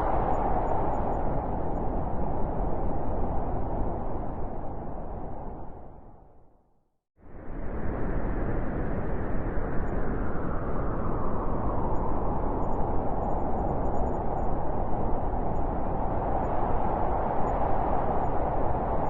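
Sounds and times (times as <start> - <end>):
howling blizzard wind: 0.0 - 6.5, 7.2 - 19.0.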